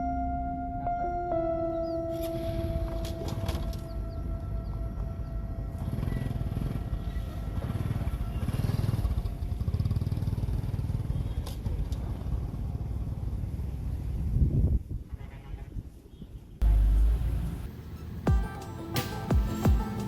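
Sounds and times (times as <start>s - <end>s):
engine running with pulsing rumble: 2.4s - 14.3s, 16.6s - 17.8s.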